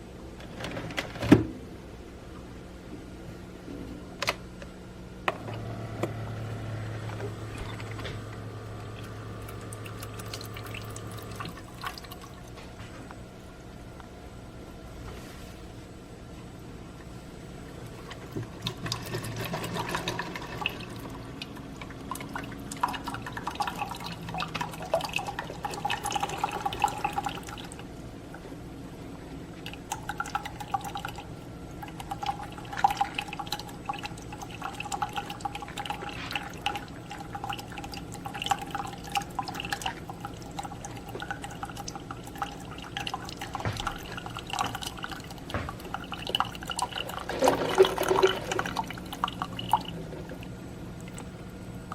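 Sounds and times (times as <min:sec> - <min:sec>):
coffee maker brewing: 0:05.2 - 0:15.7, 0:16.3 - 0:51.9
liquid splashing into cup: 0:32.0 - 0:51.3.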